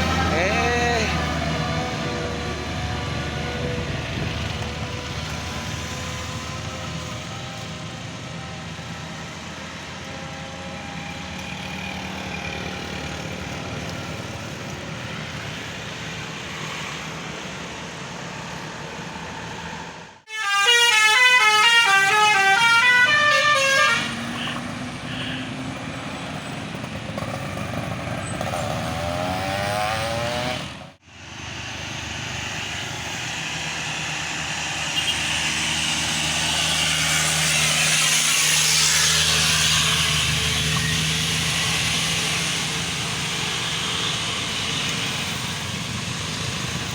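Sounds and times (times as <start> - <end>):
bus engine: 0.0 - 46.9
road traffic: 0.0 - 46.9
bus horn playing a tune: 20.3 - 24.6.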